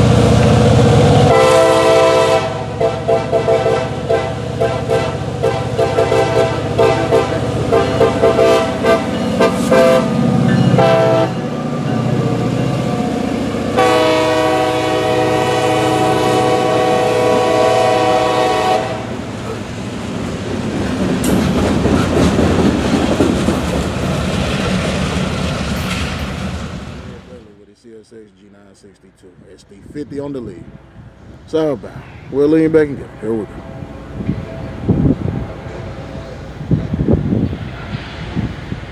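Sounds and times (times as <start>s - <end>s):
diesel locomotive passing: 0.0s - 27.6s, 29.1s - 38.9s
locomotive air horn blasts: 1.2s - 11.5s, 13.8s - 19.1s.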